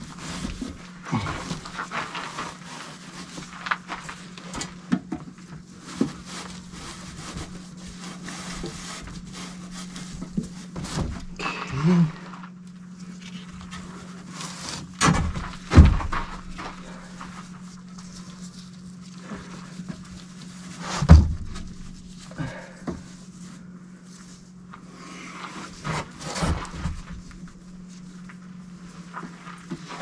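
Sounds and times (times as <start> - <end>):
steady low hum: 0.0 - 30.0
soft rustling: 15.5 - 22.4.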